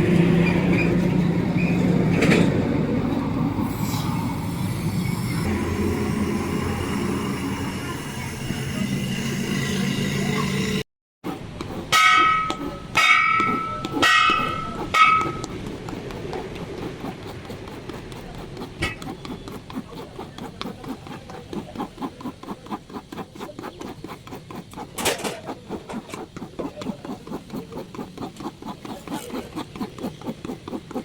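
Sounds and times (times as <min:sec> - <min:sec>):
hand work strokes on tyre: 0:11.2 - 0:31.0.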